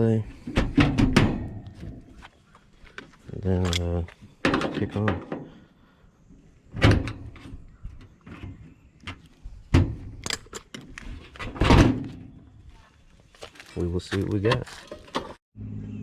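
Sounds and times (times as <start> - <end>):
clunks and knocks: 0.3 - 2.3, 4.4 - 5.6, 6.7 - 12.4.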